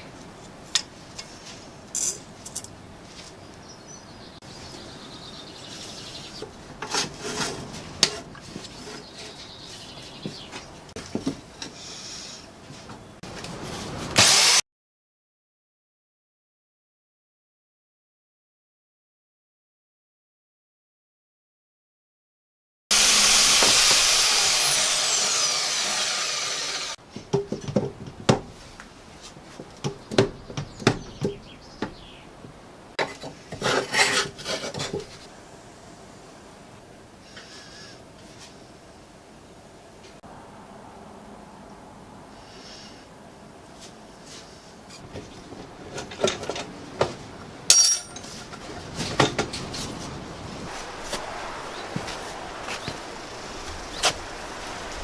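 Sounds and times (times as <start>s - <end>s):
power saw cutting metal: 14.2s - 14.6s, 22.9s - 27.0s
metal objects clanking: 47.7s - 48.4s.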